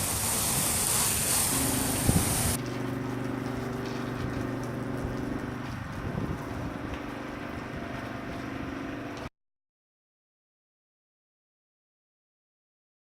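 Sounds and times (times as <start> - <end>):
pressure washer engine humming: 0.0 - 9.3.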